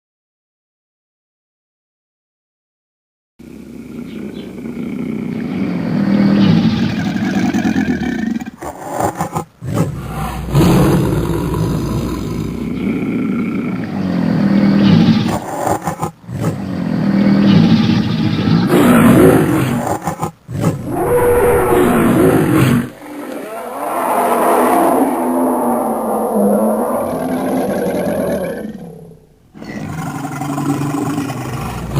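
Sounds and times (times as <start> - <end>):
deep growling dragon roars: 9.6 - 15.4, 16.3 - 19.9, 20.5 - 31.9.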